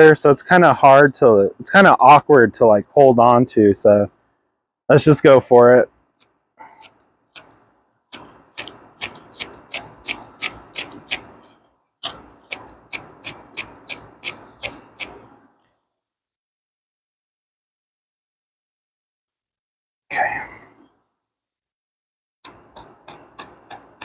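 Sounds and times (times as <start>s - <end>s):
flint spark wheel scraping: 6.6s - 15.4s.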